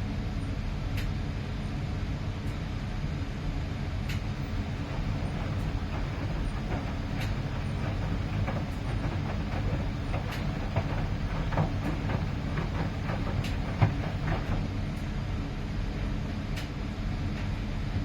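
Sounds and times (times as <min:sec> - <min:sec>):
washing machine drum rumbling: 0:04.2 - 0:14.7
washing machine clicks and knocks: 0:04.3 - 0:14.6.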